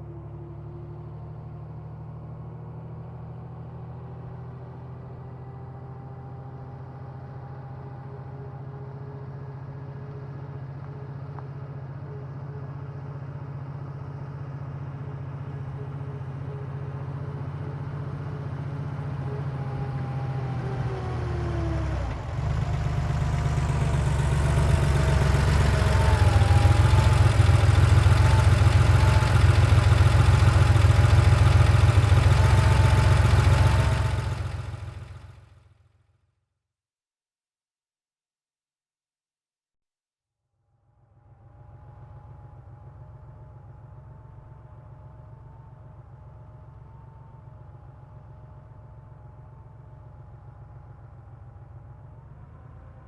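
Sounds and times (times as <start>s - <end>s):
car engine running: 20.8s - 35.5s.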